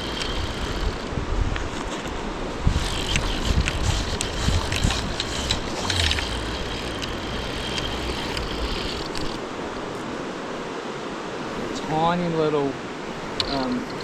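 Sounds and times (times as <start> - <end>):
sharp ticks and clicks: 0.0 - 1.7, 2.7 - 9.5
wind buffeting microphone: 0.0 - 10.7
running river water: 0.0 - 14.0.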